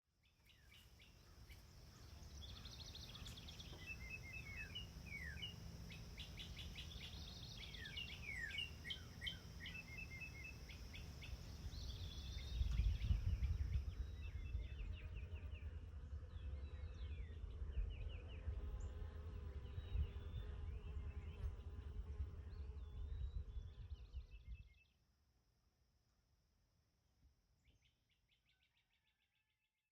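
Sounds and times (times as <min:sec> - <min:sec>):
songbirds singing: 0:00.2 - 0:24.9
wind rumble on microphone: 0:11.2 - 0:24.8.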